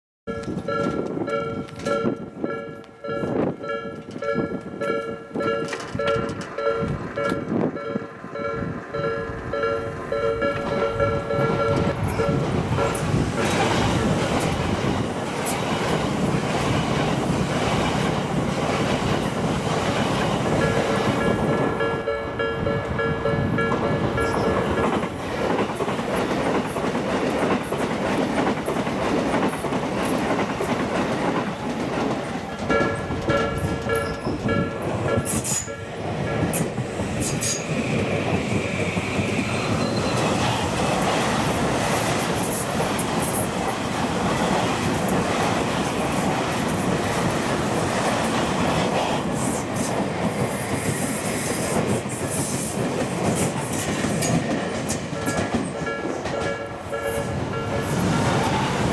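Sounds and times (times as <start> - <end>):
train wheels clickety-clack: 0.3 - 8.1, 8.8 - 58.9
level crossing warning bell: 0.3 - 13.6, 20.5 - 25.2, 32.7 - 36.7, 55.1 - 58.0.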